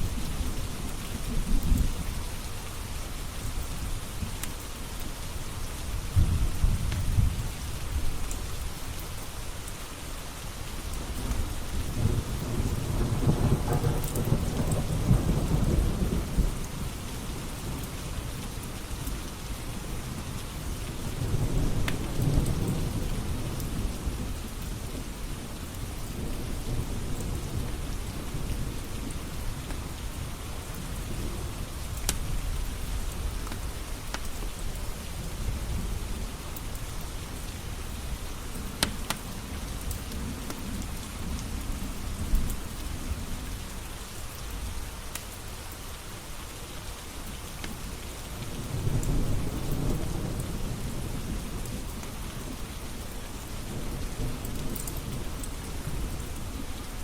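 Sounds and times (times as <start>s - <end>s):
steady rain: 0.0s - 57.0s
low thunder rumbling: 11.0s - 17.8s, 48.4s - 57.0s.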